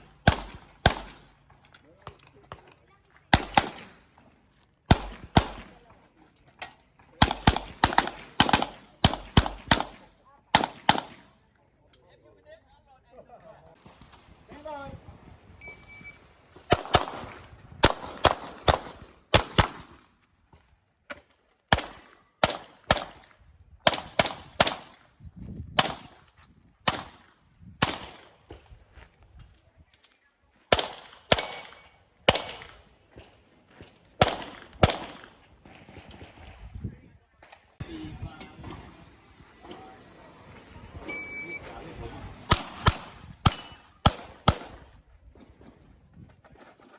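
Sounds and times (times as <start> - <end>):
shot timer start beep: 15.6 - 16.2, 41.1 - 41.7
handgun shots: 30.7 - 32.8, 42.5 - 44.8.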